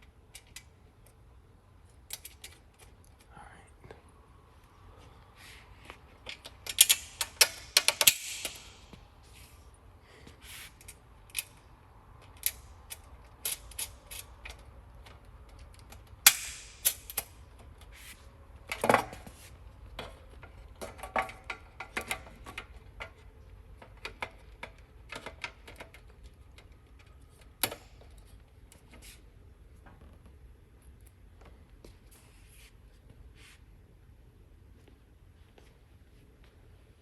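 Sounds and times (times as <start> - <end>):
metal screws and nuts clicking: 6.3 - 8.8, 12.4 - 14.6.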